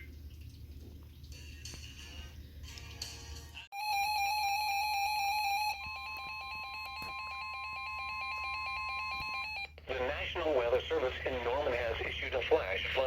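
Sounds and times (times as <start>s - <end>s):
steady warning alarm tone: 3.8s - 9.8s.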